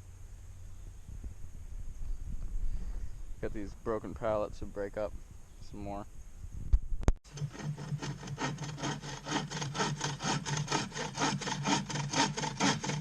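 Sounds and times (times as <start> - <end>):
hand saw cutting wood: 7.3 - 13.0.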